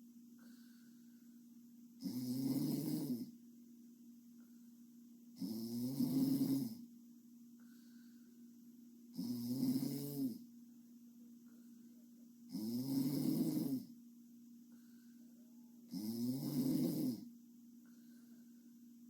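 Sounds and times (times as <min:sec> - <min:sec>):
girl snoring: 0:02.0 - 0:03.3, 0:05.4 - 0:06.8, 0:09.2 - 0:10.4, 0:12.5 - 0:13.9, 0:15.9 - 0:17.3.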